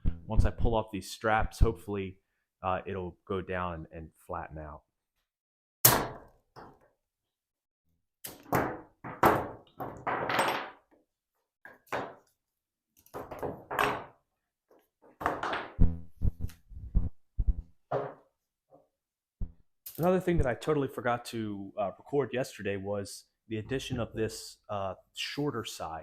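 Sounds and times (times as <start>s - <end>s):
knocks and thuds on wood: 8.4s - 10.8s, 17.0s - 18.3s.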